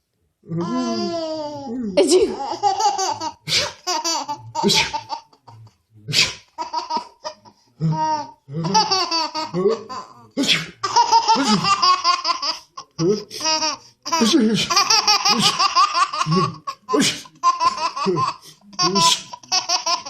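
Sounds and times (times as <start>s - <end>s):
baby giggling and laughing: 0.7s - 5.7s, 6.6s - 20.0s
person sneezing: 3.4s - 3.8s, 4.6s - 5.0s, 6.1s - 6.5s, 10.4s - 10.8s, 16.9s - 17.3s.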